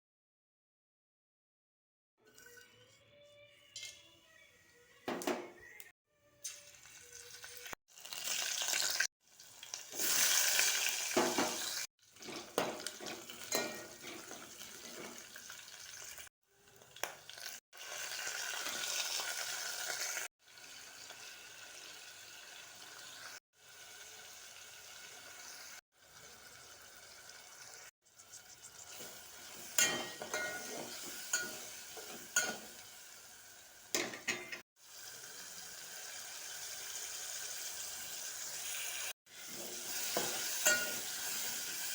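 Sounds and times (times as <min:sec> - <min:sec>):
food sizzling in a pot: 0:06.4 - 0:41.9
spoon scraping and knocking pan: 0:11.2 - 0:15.4, 0:28.3 - 0:32.8, 0:34.0 - 0:34.6, 0:39.4 - 0:41.9.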